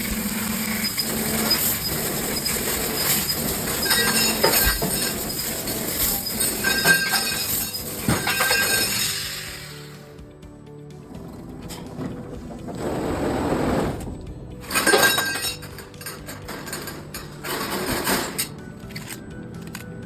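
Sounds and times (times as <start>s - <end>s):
laser gas hissing and crackling: 0.0s - 8.1s
background music: 0.0s - 20.0s.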